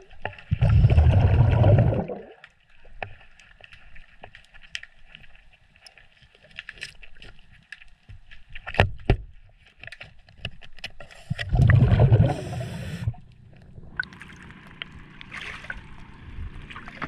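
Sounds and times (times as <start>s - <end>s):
gurgling rush of water: 0.5s - 2.3s, 11.4s - 13.1s.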